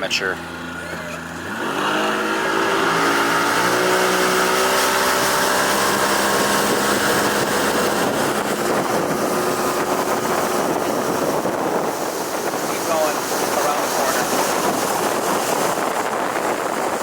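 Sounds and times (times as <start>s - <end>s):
outboard motor throttling up: 0.0s - 17.0s
rushing water: 0.0s - 17.0s
wind: 0.0s - 17.0s.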